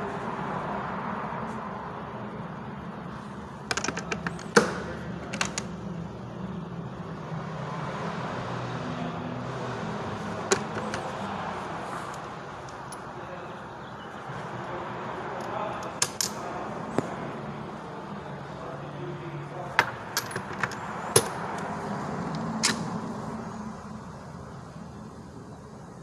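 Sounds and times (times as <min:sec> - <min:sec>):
hand tools clicking: 0:03.7 - 0:05.7, 0:10.5 - 0:11.2, 0:15.4 - 0:16.5, 0:19.8 - 0:21.7, 0:22.3 - 0:23.0.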